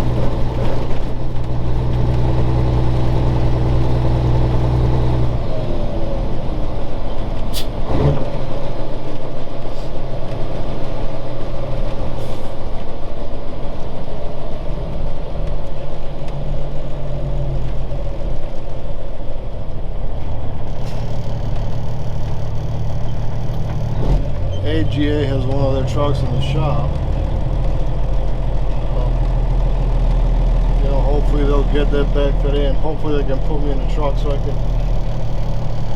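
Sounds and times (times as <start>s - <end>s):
diesel engine running: 0.0s - 35.9s.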